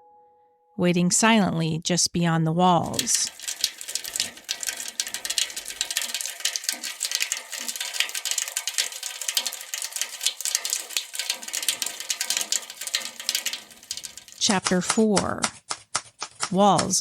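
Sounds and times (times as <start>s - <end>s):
typewriter keys clacking: 14.4s - 17.0s.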